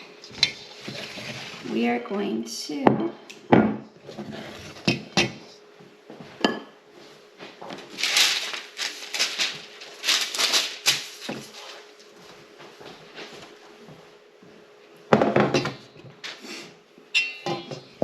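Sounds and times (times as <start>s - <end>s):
metal spoon clinking dishware: 17.2s - 17.8s.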